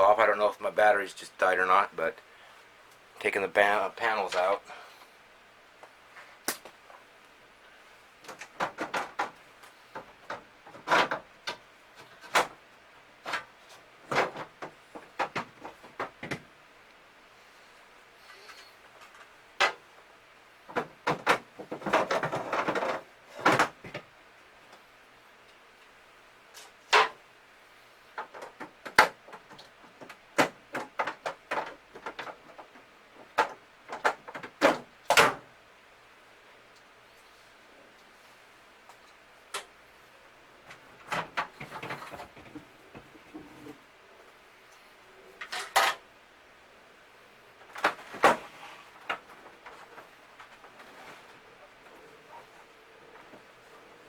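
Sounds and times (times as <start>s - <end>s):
plastic panels clicking and snapping: 8.2s - 12.6s, 13.2s - 16.5s, 19.0s - 19.8s, 20.7s - 24.1s, 26.6s - 27.2s, 28.2s - 35.5s.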